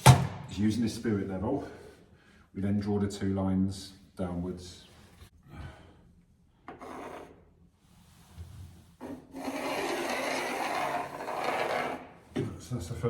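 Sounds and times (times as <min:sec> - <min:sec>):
pencil scraping along a level: 0:06.8 - 0:07.4, 0:09.0 - 0:12.2
pencil rub: 0:09.0 - 0:12.1.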